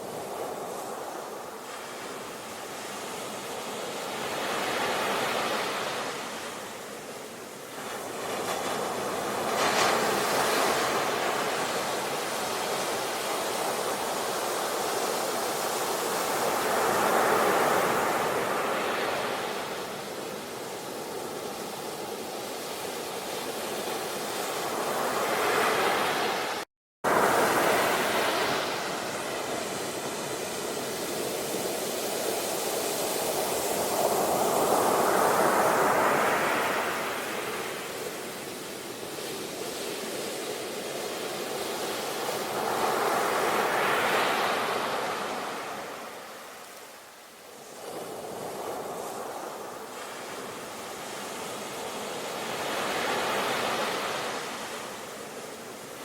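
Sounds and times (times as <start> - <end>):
ocean waves breaking: 7.7 - 46.6.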